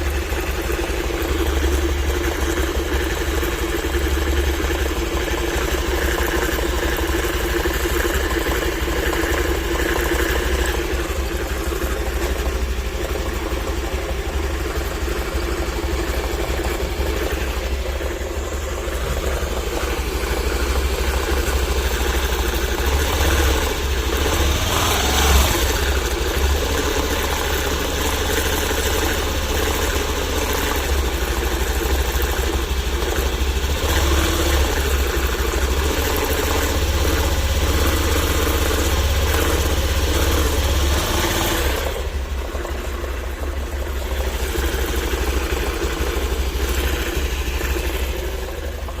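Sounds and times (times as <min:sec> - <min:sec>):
scooter engine idling: 0:00.0 - 0:49.0.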